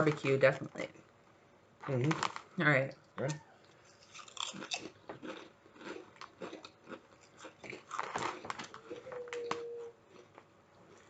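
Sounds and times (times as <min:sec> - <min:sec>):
chips being chewed: 0:04.0 - 0:11.0
brief steady tone: 0:09.1 - 0:10.0.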